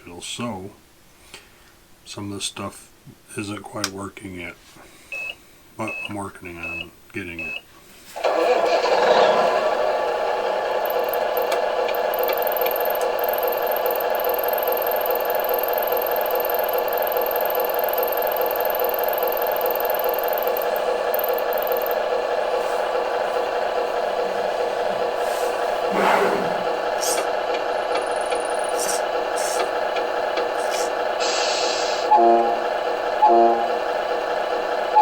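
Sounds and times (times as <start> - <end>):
simulated truck engine through speaker: 8.2 - 35.0.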